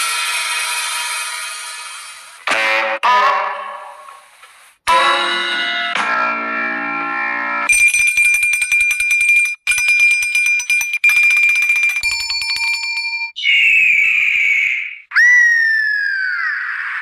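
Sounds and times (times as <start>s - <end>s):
bell ringing rapidly: 7.7s - 13.4s.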